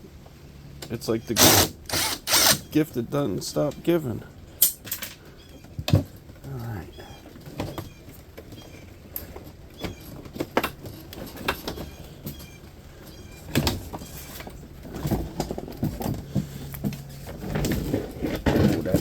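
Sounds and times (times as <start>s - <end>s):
metal parts clanking: 1.3s - 2.7s.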